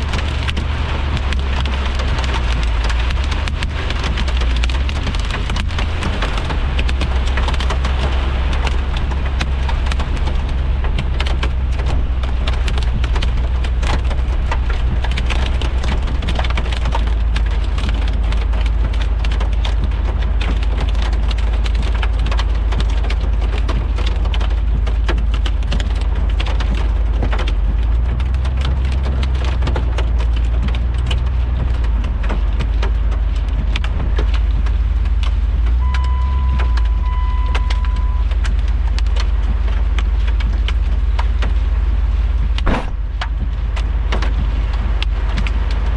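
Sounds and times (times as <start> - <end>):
engine and road noise rumble: 0.0 - 45.9
rain pattering on a vehicle: 0.0 - 45.9
short electronic beep: 35.8 - 38.2.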